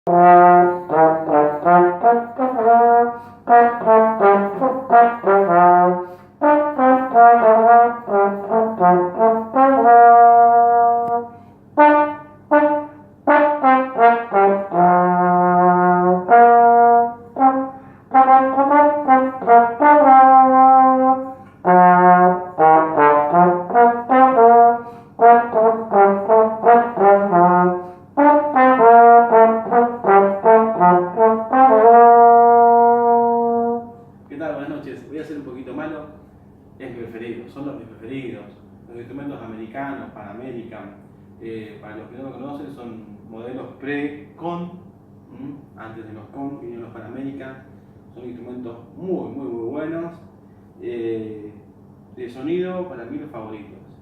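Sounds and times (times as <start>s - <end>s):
solo trombone melody: 0.0s - 34.2s.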